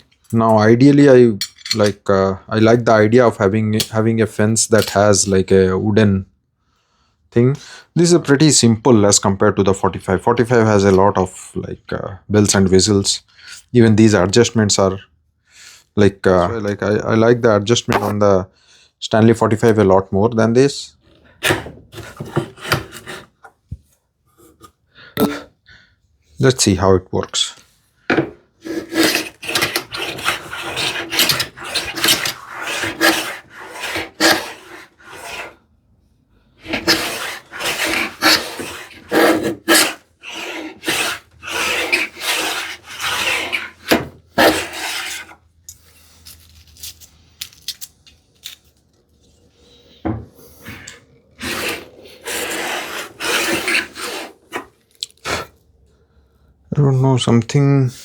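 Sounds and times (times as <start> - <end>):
plane shaving wood: 21.4 - 23.4, 28.6 - 35.6, 36.6 - 45.4, 50.6 - 54.7.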